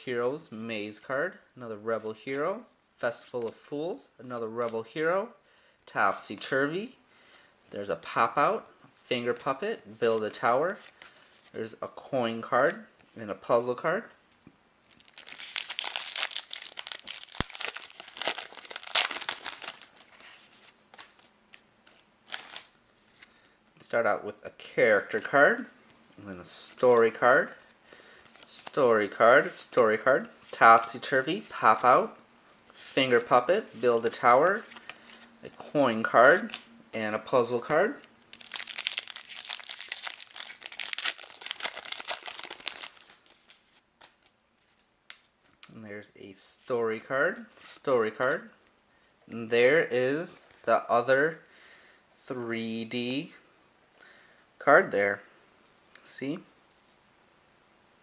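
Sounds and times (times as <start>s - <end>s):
wrapper tearing and crinkling: 14.9s - 22.8s, 38.2s - 44.4s.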